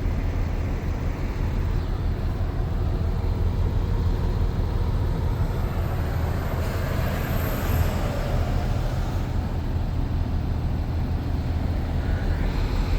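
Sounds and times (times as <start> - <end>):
diesel truck engine droning: 0.0 - 12.9.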